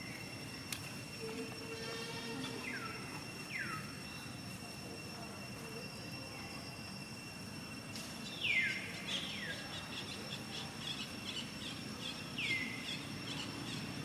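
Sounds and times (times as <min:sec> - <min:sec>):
high insect drone: 0:00.0 - 0:14.0.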